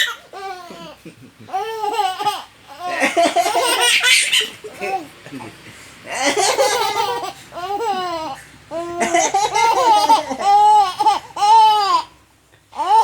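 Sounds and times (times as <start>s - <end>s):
baby laughing: 0.0s - 12.2s, 12.8s - 13.0s.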